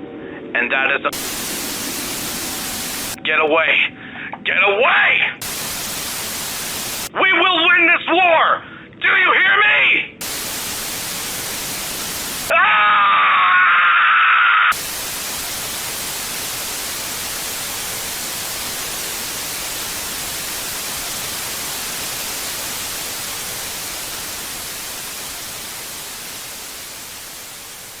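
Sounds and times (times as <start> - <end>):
radio static hiss: 1.0 - 3.2, 5.4 - 7.1, 10.2 - 12.5, 14.7 - 28.0.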